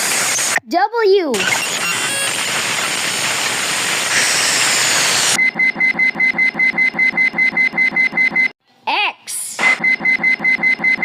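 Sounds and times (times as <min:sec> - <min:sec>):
rapid alarm-like beeping: 0:01.4 - 0:03.2, 0:04.1 - 0:08.6, 0:09.6 - 0:11.0.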